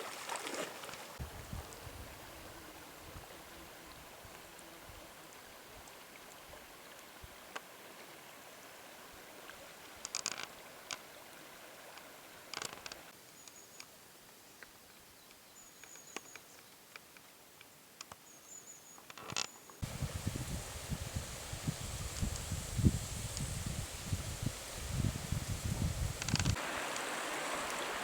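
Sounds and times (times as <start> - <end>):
faint outdoor hiss: 0.0 - 28.0
clicks and crackles: 10.0 - 10.5, 26.2 - 26.6.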